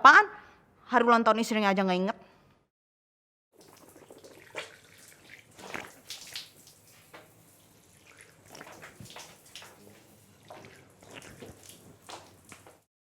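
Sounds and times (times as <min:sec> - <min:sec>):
tap water splashing and dripping: 0:03.6 - 0:12.9.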